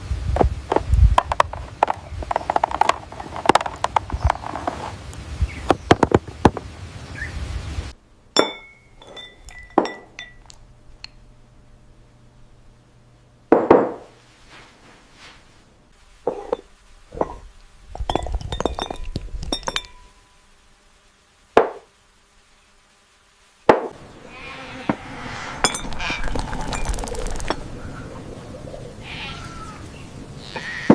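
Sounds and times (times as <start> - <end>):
clinks of glass or dishware: 8.4 - 10.6, 18.1 - 20.2.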